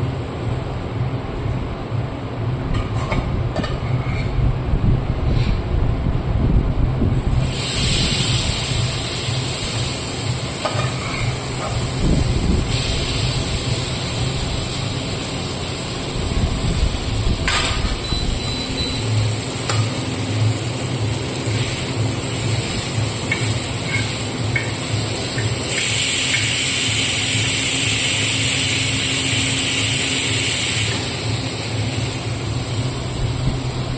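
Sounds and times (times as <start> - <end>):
low rumble: 4.2 - 7.5
curry sizzling in a hot pan: 7.4 - 33.8.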